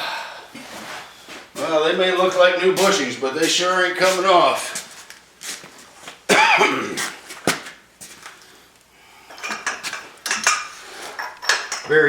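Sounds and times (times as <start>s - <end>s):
metal tools clinking and knocking: 9.3s - 12.0s.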